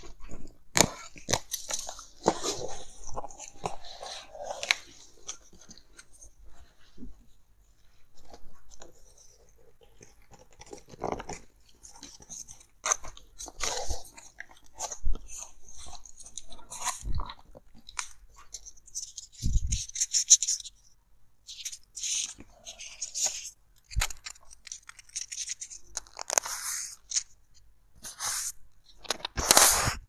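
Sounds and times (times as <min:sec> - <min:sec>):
packaging crinkling: 0:22.3 - 0:27.3.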